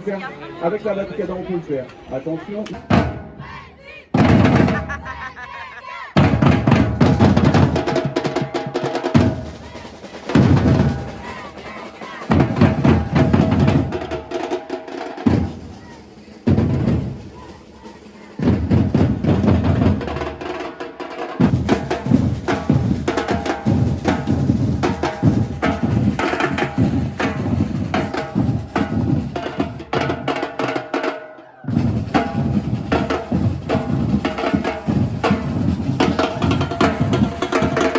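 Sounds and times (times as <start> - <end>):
snare drum: 4.2 - 5.1, 6.2 - 37.9
bass drums: 18.4 - 20.2, 21.4 - 30.2.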